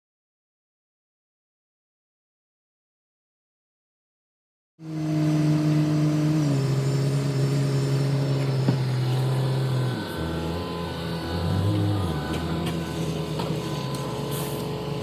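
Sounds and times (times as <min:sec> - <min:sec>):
engine running: 0:04.8 - 0:15.0.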